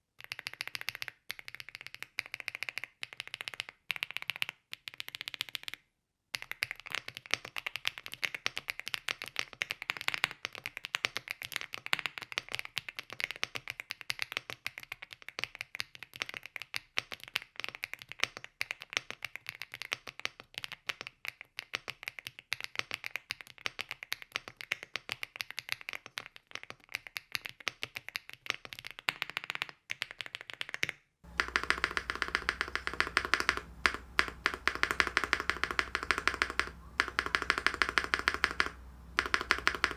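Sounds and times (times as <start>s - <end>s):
mechanical keyboard typing: 0.2s - 5.8s, 6.4s - 14.3s, 27.0s - 39.9s
steady low hum: 31.3s - 39.9s.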